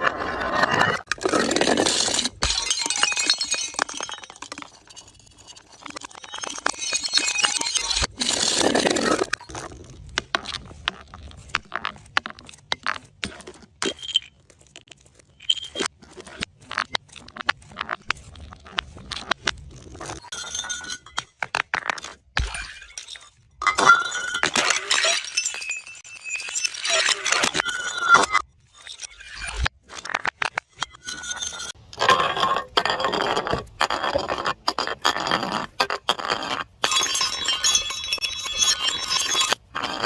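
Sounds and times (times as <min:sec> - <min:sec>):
glass shattering: 0:02.0 - 0:05.2, 0:22.4 - 0:28.4
glass shards clinking: 0:02.2 - 0:05.2, 0:22.7 - 0:29.6, 0:36.8 - 0:39.6.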